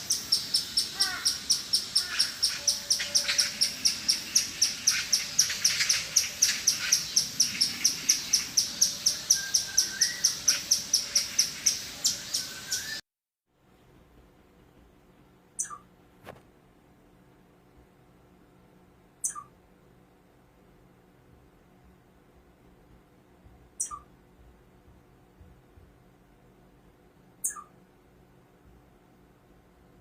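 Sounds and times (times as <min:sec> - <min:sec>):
squirrel chirping: 0:00.0 - 0:13.0, 0:15.6 - 0:15.9, 0:19.2 - 0:19.6, 0:23.8 - 0:24.2, 0:27.3 - 0:27.8
fainter lower animal calls: 0:19.2 - 0:19.6, 0:27.4 - 0:27.8.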